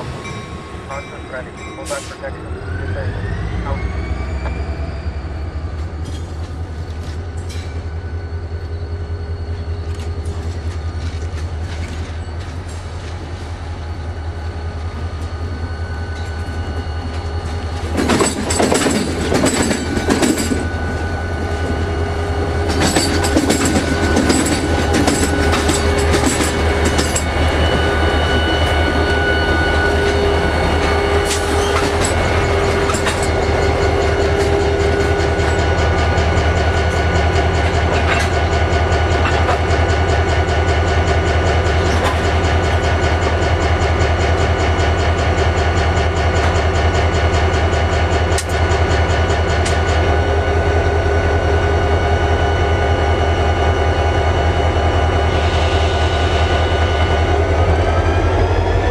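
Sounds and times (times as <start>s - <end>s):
diesel locomotive engine throbbing: 0.0s - 58.9s
wheels clattering over rail joints: 30.0s - 44.1s.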